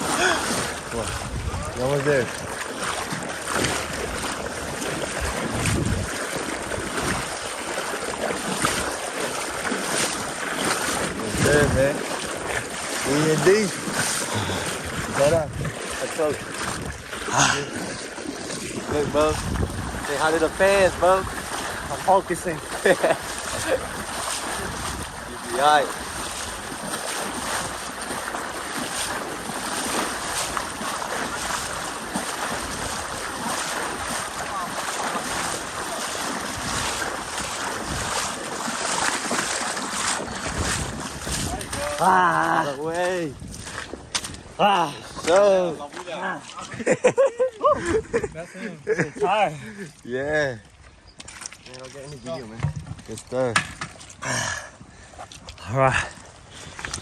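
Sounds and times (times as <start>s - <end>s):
wind buffeting microphone: 0.0s - 7.7s, 8.3s - 45.6s, 47.7s - 48.6s
river water rushing: 0.0s - 42.9s.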